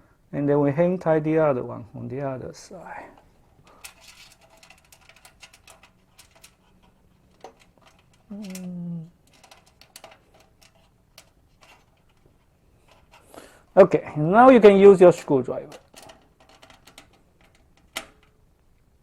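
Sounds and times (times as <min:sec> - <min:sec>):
person humming: 0:08.3 - 0:09.2.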